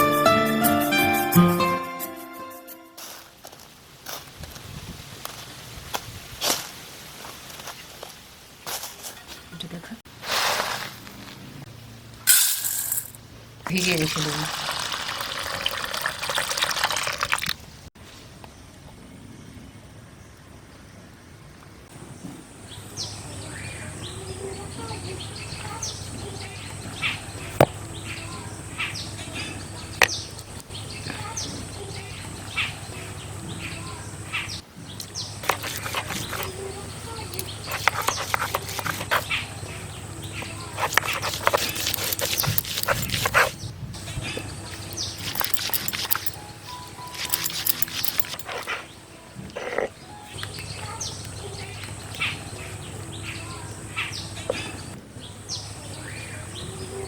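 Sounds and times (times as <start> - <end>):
birds chirping: 21.9 - 57.0.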